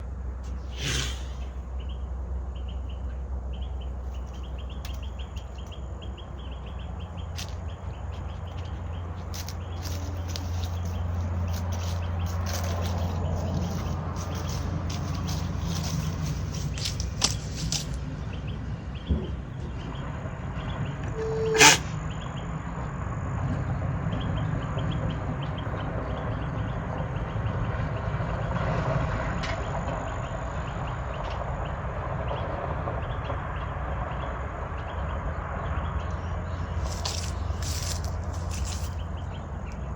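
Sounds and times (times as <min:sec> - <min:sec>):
low background rumble: 0:00.0 - 0:39.9
alpaca sneezing: 0:00.6 - 0:01.6, 0:21.2 - 0:22.0.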